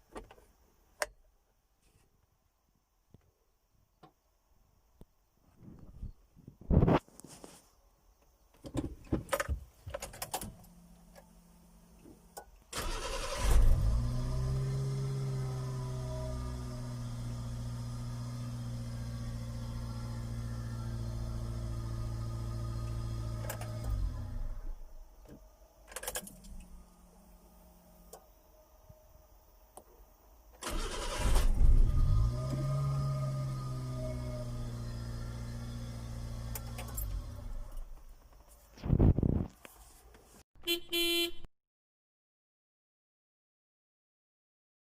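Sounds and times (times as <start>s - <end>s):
starter motor cranking engine: 12.8s - 14.0s, 30.6s - 32.7s.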